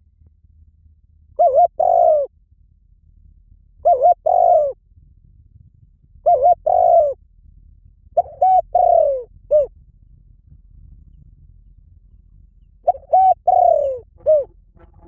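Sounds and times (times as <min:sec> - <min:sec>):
dove cooing: 0:01.4 - 0:02.3, 0:03.8 - 0:04.8, 0:06.2 - 0:07.2, 0:08.2 - 0:09.7, 0:12.8 - 0:14.5.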